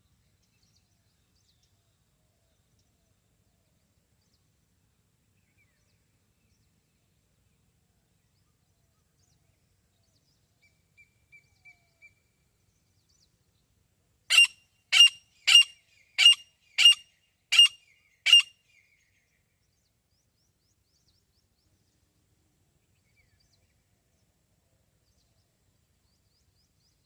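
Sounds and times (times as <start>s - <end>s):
francolin calling: 14.3s - 18.5s.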